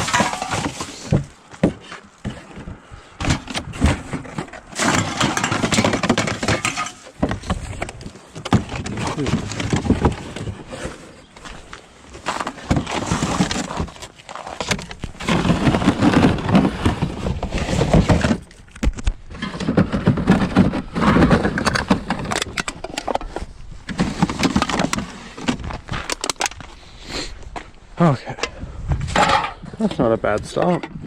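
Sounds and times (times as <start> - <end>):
bottles and cans clattering: 0.0 - 2.6, 3.2 - 10.6.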